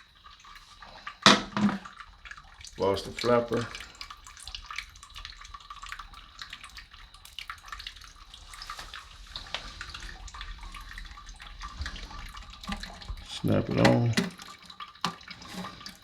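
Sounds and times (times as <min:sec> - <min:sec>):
water splashes and drips: 0:00.0 - 0:16.0.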